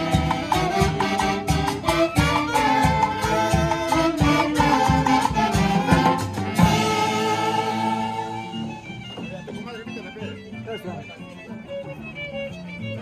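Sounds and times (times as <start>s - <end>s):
dance orchestra playing: 0.0s - 9.1s
quick percussion beat: 0.0s - 9.6s.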